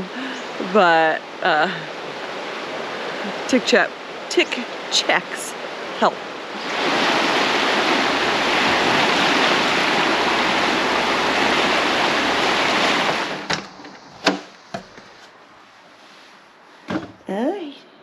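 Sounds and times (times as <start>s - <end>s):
river water rushing: 0.0s - 15.2s
short knocks: 16.9s - 17.2s.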